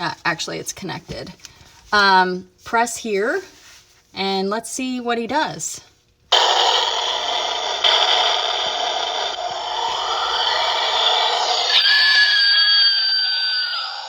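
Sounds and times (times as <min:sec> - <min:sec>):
tinny toy speaker sound effect: 0:06.3 - 0:14.0.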